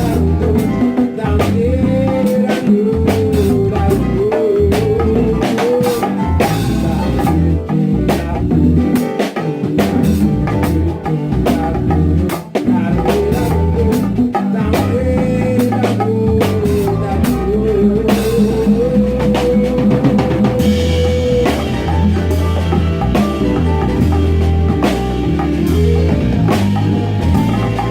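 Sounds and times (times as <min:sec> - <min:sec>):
band playing instrumental: 0:00.0 - 0:27.9.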